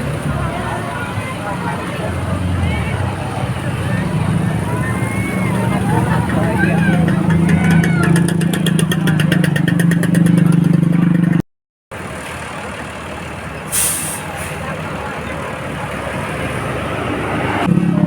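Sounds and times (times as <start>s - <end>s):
traffic noise: 0.0s - 18.0s
air brake hiss: 13.7s - 14.6s.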